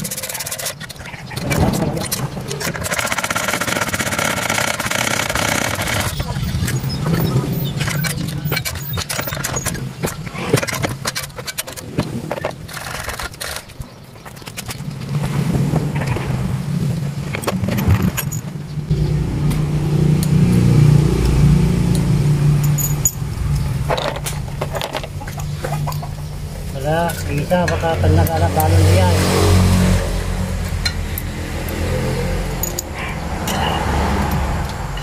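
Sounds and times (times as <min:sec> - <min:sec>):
small generator engine humming: 0:18.9 - 0:28.8
metallic clicks of tools: 0:30.6 - 0:32.0, 0:32.6 - 0:35.0.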